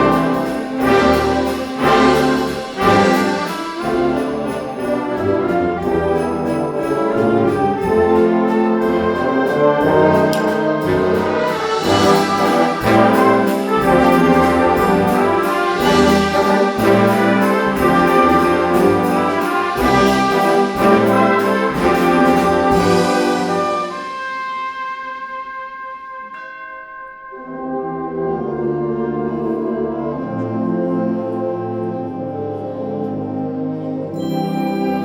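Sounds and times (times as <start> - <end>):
concert band playing: 0.0 - 24.9
high percussion ticks: 9.8 - 23.2.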